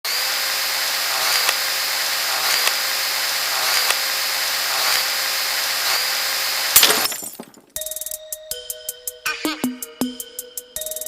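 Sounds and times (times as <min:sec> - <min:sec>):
mechanical whirring with high tone: 0:00.1 - 0:06.7
click: 0:01.2 - 0:01.6, 0:02.4 - 0:02.8, 0:03.6 - 0:04.0.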